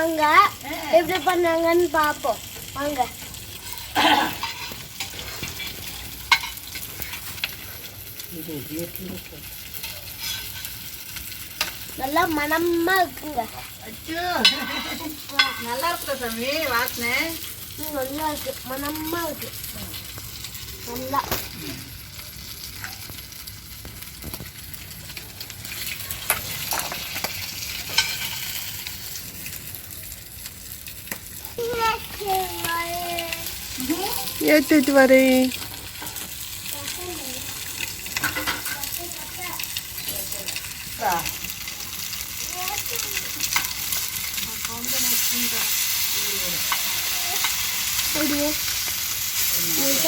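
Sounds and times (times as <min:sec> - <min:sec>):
fish sizzling in oil: 0:00.0 - 0:50.0
sharp clinks and scrapes: 0:03.6 - 0:07.7, 0:09.8 - 0:10.8, 0:25.6 - 0:28.9.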